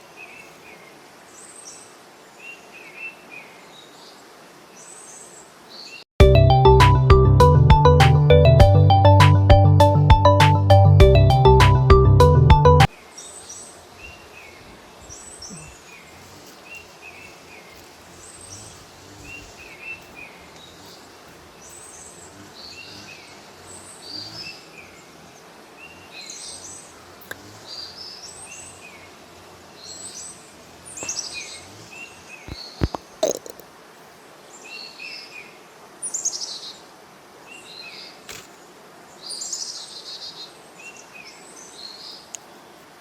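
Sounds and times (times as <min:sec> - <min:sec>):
outdoor background hiss: 0:00.0 - 0:43.0
small birds chirping: 0:12.8 - 0:33.7.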